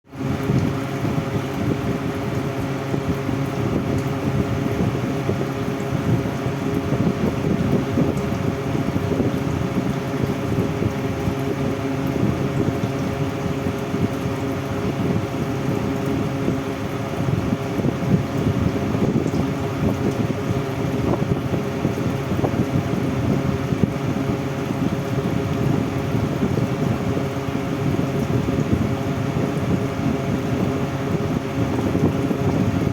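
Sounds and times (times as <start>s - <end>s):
fan air rushing: 0.0s - 32.9s
low motor hum: 0.0s - 32.9s.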